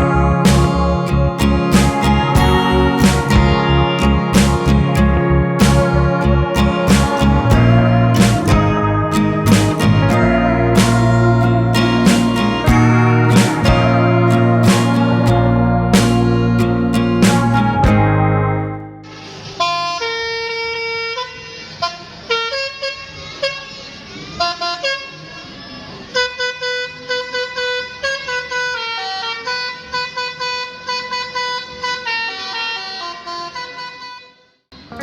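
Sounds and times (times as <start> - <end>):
multi-tone air horn tune: 19.0 - 34.6.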